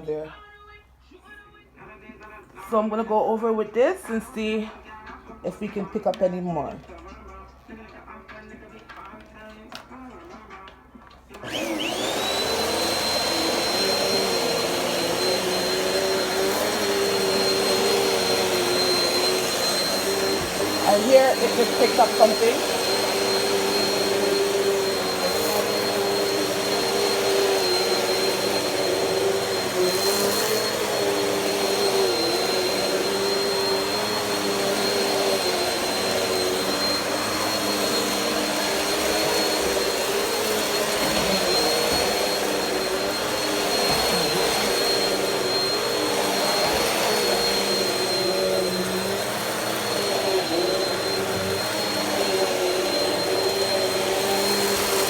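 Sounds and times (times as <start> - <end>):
vacuum cleaner motor hum: 11.4 - 55.0.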